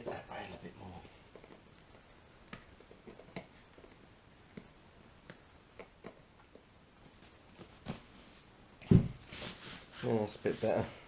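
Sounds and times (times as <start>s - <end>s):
faint clicks and taps: 0.0s - 7.7s.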